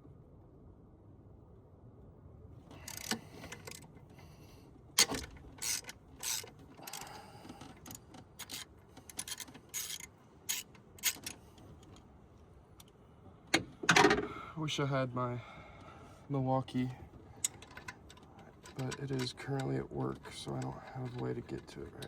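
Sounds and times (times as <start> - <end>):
socket ratchet clicking: 5.0 - 12.0.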